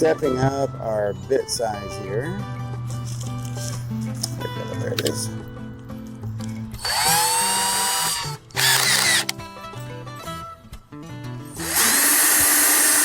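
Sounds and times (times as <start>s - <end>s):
electric drill whining: 6.8s - 9.4s, 11.5s - 13.0s.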